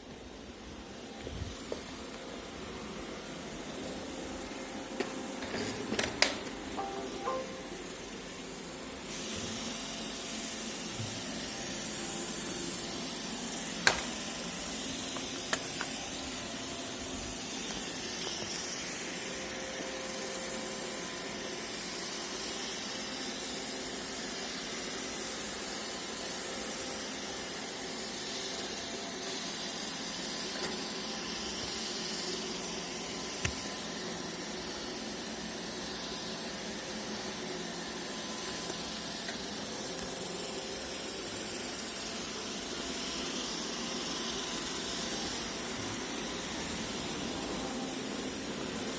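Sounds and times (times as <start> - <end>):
robot vacuum whirring: 0.9 - 26.5, 27.3 - 48.9.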